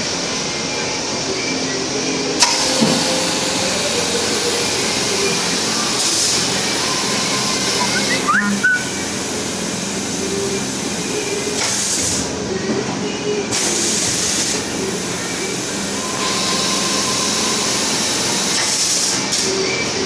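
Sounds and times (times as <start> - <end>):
machine humming: 1.6 - 12.6.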